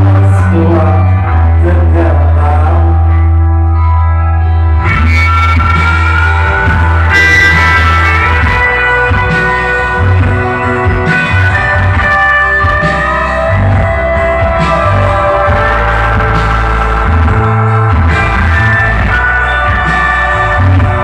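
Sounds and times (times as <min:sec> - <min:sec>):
electric guitar melody with sliding notes: 0:00.0 - 0:21.0
heavy steady bass: 0:00.0 - 0:21.0.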